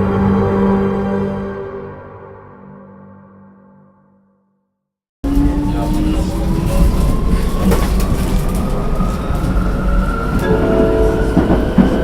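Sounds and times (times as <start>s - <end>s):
wheels rumbling: 5.2s - 12.0s.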